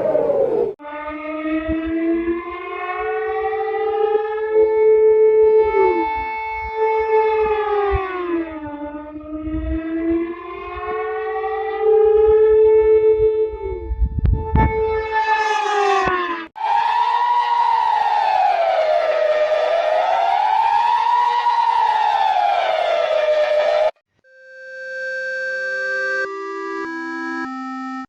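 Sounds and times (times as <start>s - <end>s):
reversed siren wailing: 0.0s - 24.0s
low thumps: 14.0s - 15.1s.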